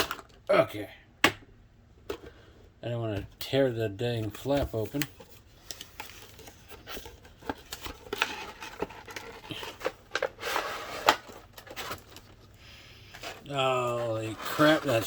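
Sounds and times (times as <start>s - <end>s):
scrapes crinkles and clicks: 4.2s - 15.0s
plastic tray sliding: 8.2s - 12.1s, 13.1s - 15.0s.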